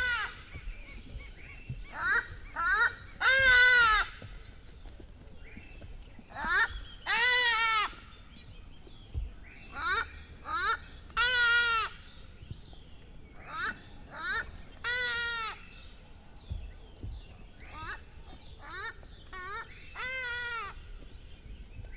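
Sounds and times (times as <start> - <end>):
animal calls: 0.0 - 4.4.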